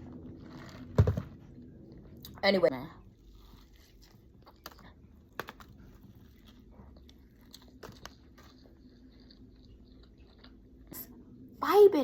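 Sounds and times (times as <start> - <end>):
faint chewing with crunches: 3.0 - 11.4.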